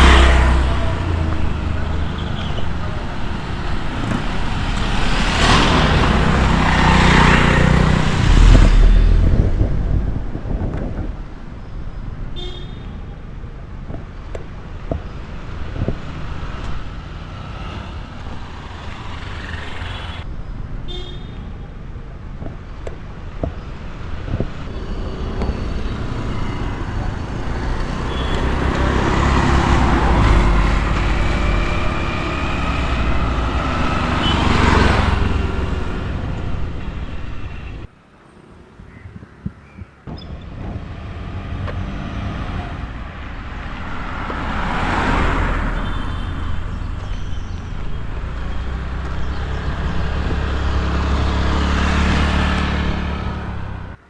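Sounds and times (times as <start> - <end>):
vehicles passing close by: 0.0 - 54.0.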